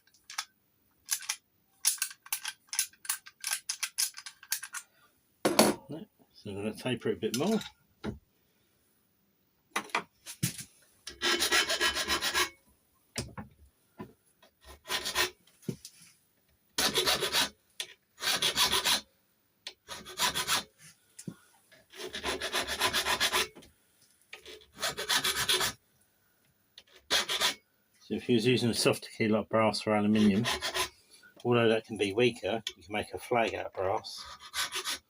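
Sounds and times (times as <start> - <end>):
hand file rasping on metal key: 11.1 - 12.5, 22.0 - 23.5, 24.7 - 25.8, 30.2 - 31.0, 34.2 - 35.0.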